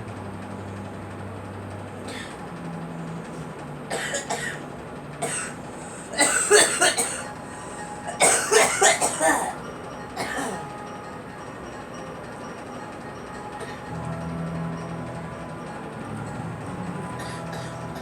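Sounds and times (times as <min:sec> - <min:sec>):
girl coughing: 0:03.9 - 0:04.6, 0:05.2 - 0:05.5, 0:06.1 - 0:07.3, 0:08.2 - 0:09.6, 0:10.2 - 0:10.6.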